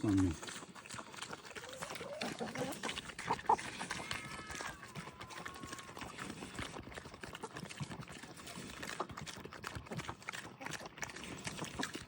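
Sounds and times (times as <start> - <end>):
chickens clucking: 0.0 - 4.2
pigs grunting: 0.0 - 12.0.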